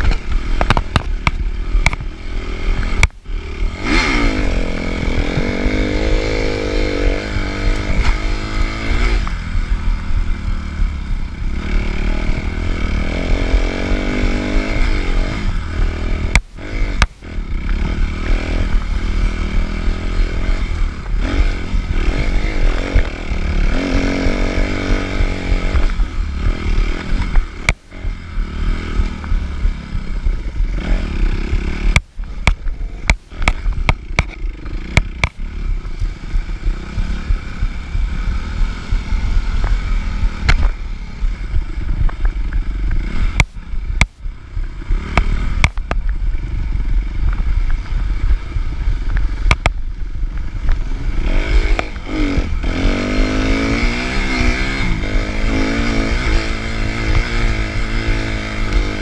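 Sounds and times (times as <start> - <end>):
knocks and clatter over rough ground: 0.0 - 3.2, 19.6 - 59.0
dirt bike engine revving: 0.0 - 59.0.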